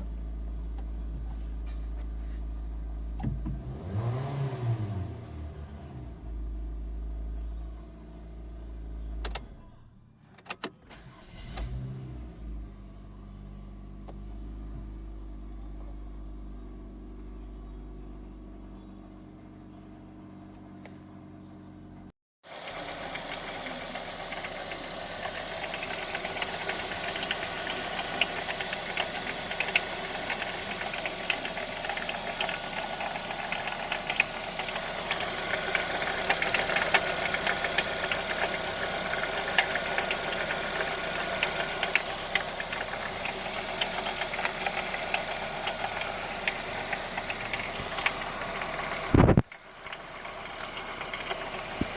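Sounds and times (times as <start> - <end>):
engine revving: 3.3 - 6.5, 11.2 - 12.6, 22.8 - 51.9
car engine idling: 22.5 - 51.9
fast irregular ticking rattle: 22.6 - 51.9.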